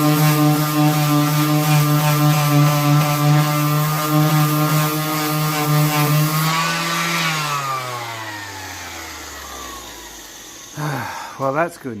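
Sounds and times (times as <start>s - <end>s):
power tool motor running: 0.0s - 12.0s.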